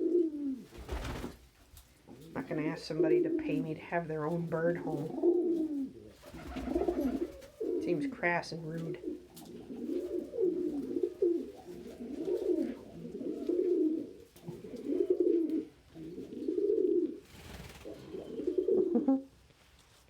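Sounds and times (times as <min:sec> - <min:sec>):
pigeon cooing: 0:00.0 - 0:01.3, 0:04.8 - 0:08.0, 0:08.7 - 0:19.3.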